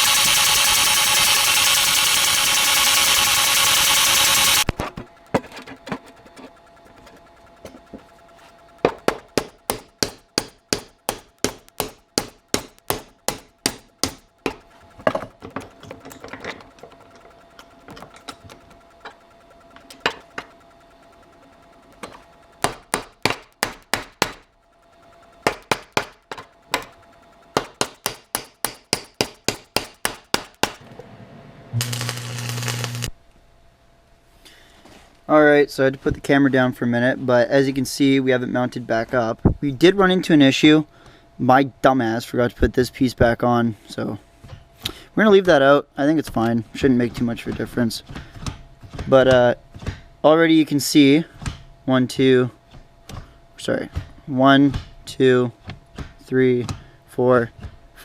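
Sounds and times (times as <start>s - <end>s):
power tool running: 0.0s - 33.1s
hammer striking steel: 4.7s - 30.8s.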